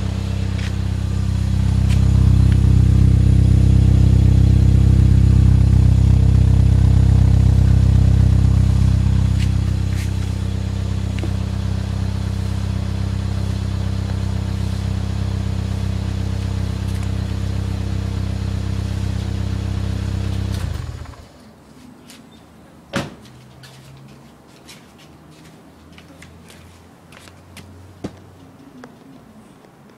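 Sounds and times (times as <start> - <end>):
car engine idling: 0.0 - 21.4.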